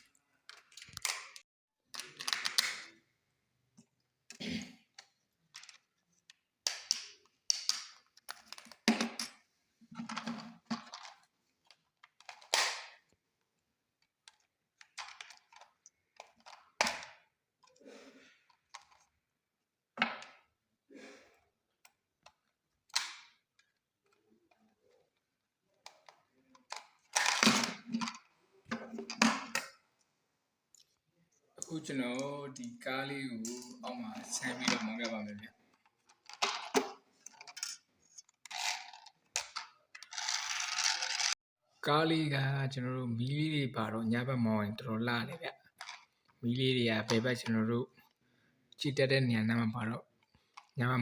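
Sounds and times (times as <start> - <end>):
plastic toy clicks and clatter: 36.0 - 41.4.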